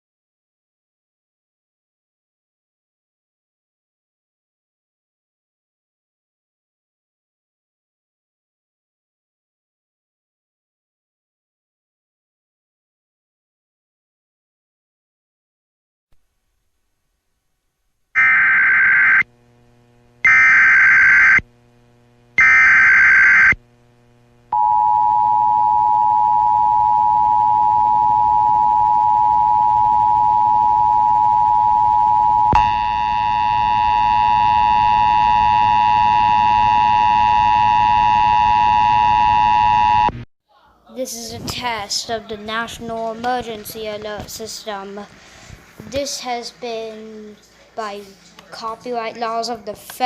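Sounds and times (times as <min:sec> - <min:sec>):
two-tone attention signal: 0:24.6 - 0:40.1.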